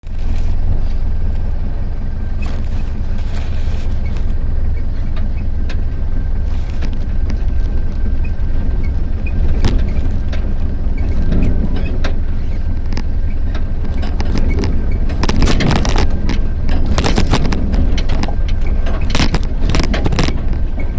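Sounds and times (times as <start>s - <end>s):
vehicle engine running: 0.0s - 20.9s
knocks and rattles: 6.5s - 20.9s.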